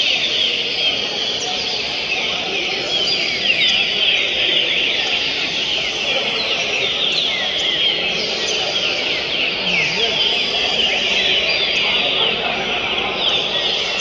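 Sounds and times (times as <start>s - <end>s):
birds singing in chorus: 0.0s - 14.0s
low murmur: 0.0s - 14.0s.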